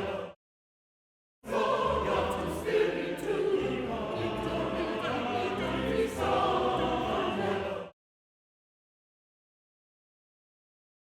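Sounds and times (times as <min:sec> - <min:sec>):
choir singing: 0:00.0 - 0:00.4, 0:01.4 - 0:08.0.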